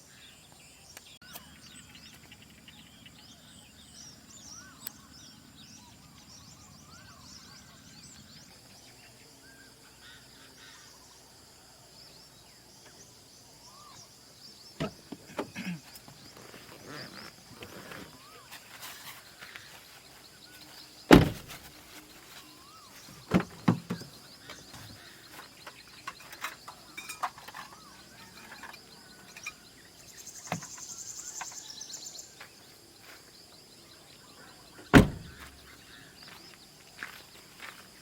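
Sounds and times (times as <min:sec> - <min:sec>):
faint bird chirps: 0:00.0 - 0:38.0
high insect drone: 0:01.5 - 0:38.0
sharp knocks: 0:21.1 - 0:21.6, 0:34.9 - 0:35.5.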